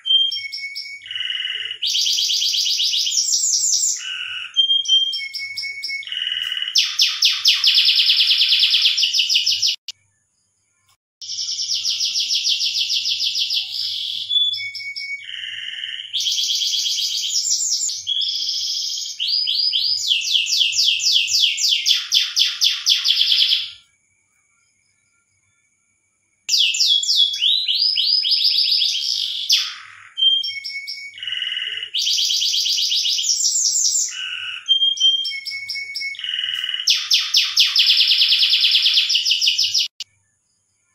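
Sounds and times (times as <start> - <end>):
canary singing trills: 0.0 - 10.0, 10.8 - 23.9, 26.5 - 40.1.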